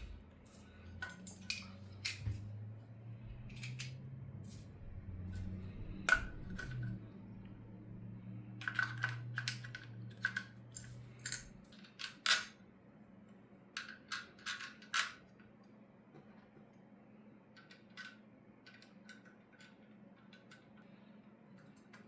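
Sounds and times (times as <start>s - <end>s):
light metallic clicks of screws and tools: 0.5s - 2.6s, 3.5s - 4.0s.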